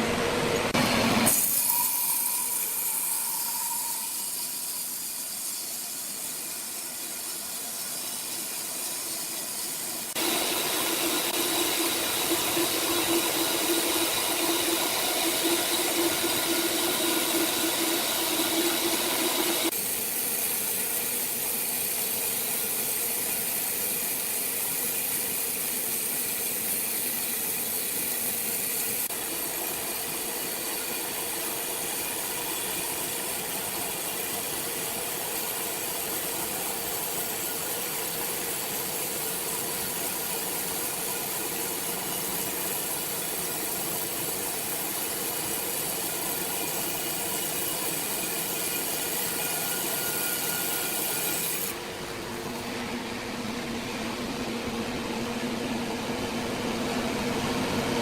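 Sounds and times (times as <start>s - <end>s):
machinery hiss: 9.6s - 26.2s.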